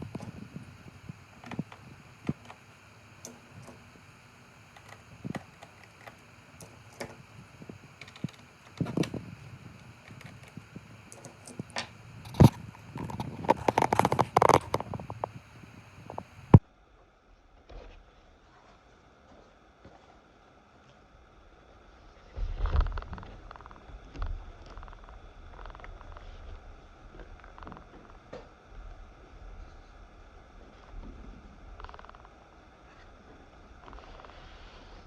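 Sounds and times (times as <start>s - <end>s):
clicking and scraping: 0.0s - 16.6s.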